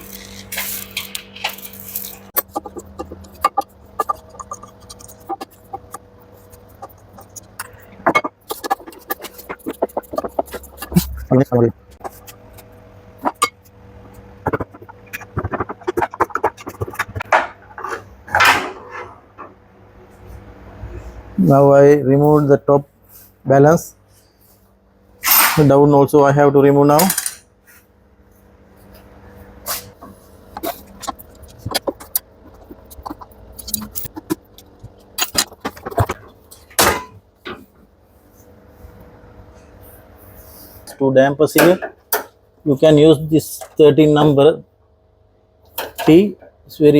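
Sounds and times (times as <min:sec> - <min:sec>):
tools and metal parts rattling: 0:26.9 - 0:27.4, 0:30.6 - 0:37.6
metal parts clinking and knocking: 0:27.0 - 0:27.4, 0:32.9 - 0:34.3, 0:35.1 - 0:36.2.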